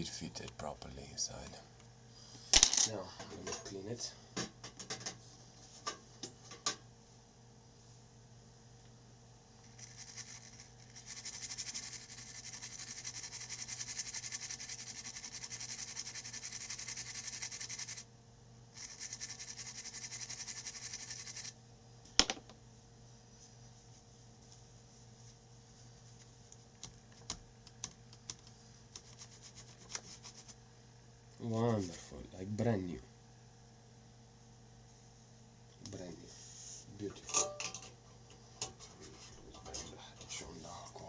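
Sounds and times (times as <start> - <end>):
brush scrubbing: 9.7 - 18.0, 28.9 - 30.6, 31.6 - 32.2.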